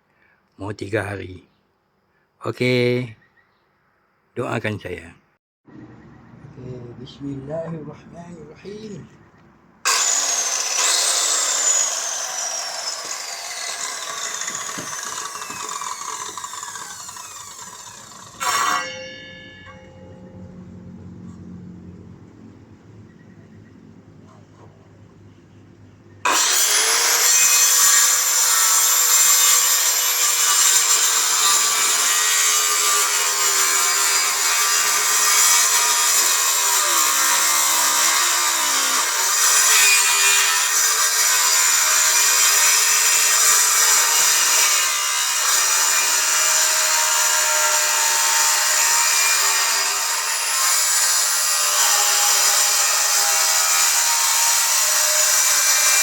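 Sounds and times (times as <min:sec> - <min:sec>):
circular saw cutting wood: 0:09.8 - 0:19.8, 0:26.3 - 0:56.0.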